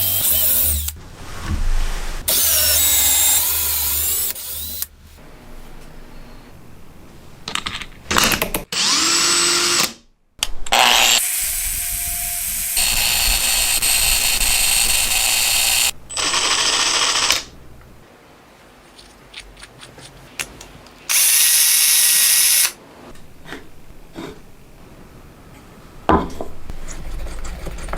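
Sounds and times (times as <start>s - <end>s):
power tools running: 2.3s - 4.9s, 10.7s - 17.5s
motor spinning up: 10.8s - 17.4s.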